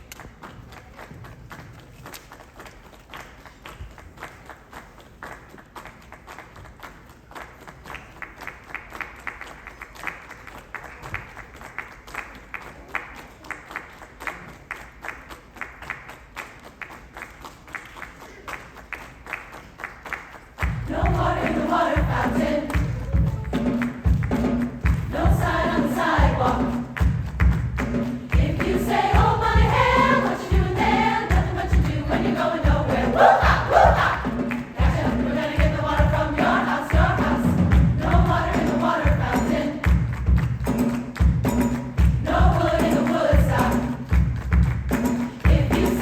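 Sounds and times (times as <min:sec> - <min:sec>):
sharp percussive beats: 0:20.6 - 0:46.0
choir singing loudly: 0:20.8 - 0:23.7, 0:25.0 - 0:27.0, 0:28.3 - 0:40.0, 0:42.2 - 0:44.1, 0:45.5 - 0:46.0.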